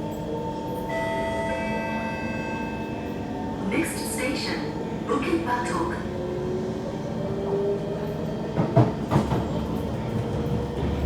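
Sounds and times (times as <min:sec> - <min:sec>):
train running rumble: 0:07.3 - 0:11.0.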